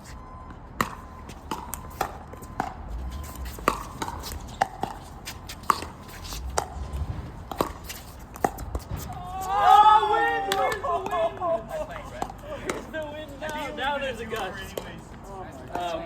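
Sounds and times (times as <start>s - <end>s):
wind rumble on microphone: 6.5s - 7.8s.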